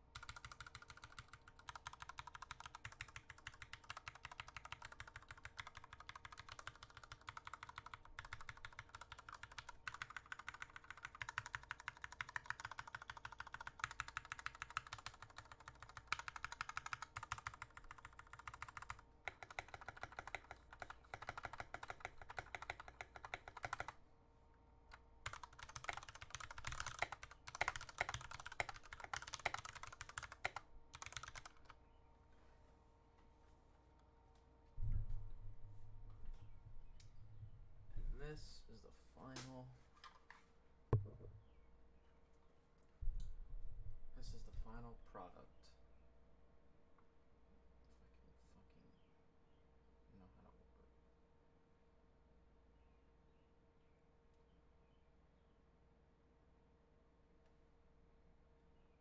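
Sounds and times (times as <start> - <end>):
mechanical keyboard typing: 0.1 - 24.0, 25.2 - 31.8.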